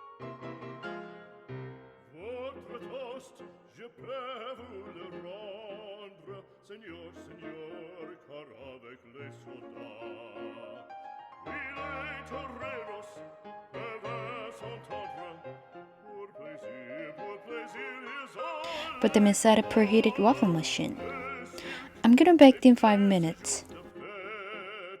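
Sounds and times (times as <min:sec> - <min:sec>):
instrumental accompaniment: 0:09.5 - 0:24.2
opera singing with vibrato: 0:16.2 - 0:25.0.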